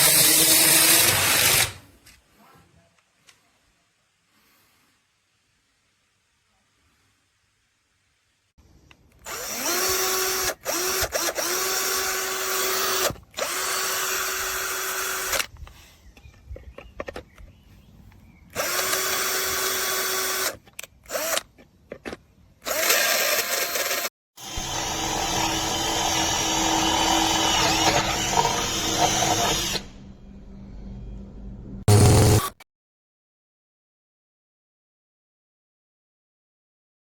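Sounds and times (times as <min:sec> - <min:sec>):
cordless drill whining: 0:09.2 - 0:15.5, 0:18.6 - 0:21.4, 0:22.6 - 0:30.0, 0:31.9 - 0:32.6.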